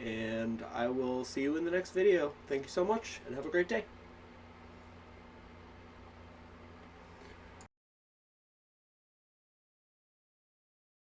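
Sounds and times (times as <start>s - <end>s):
low electrical hum: 0.0s - 7.7s.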